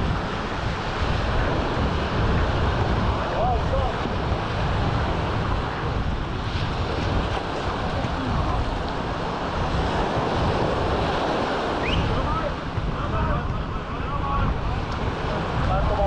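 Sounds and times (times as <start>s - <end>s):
sea surf: 0.0s - 16.0s
wind buffeting microphone: 0.0s - 16.0s.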